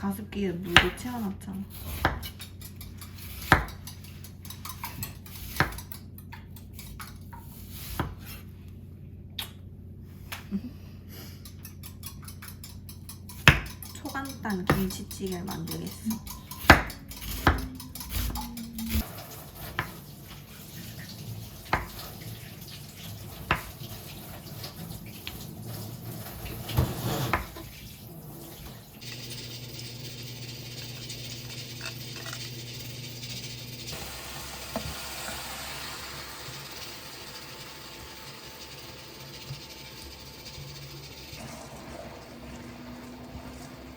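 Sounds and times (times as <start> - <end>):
pots and dishes clinking: 2.3 - 7.4, 11.4 - 20.0
running water: 17.2 - 32.7, 33.8 - 43.9.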